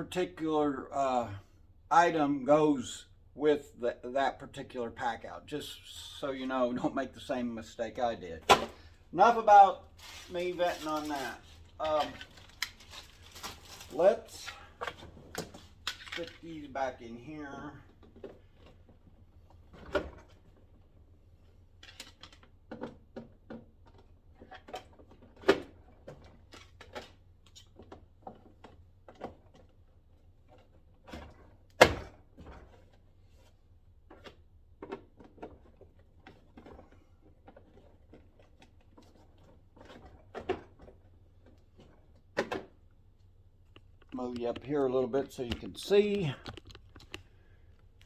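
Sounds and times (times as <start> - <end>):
plastic bins clicking and knocking: 7.9 - 16.8, 21.8 - 29.8, 34.0 - 42.9.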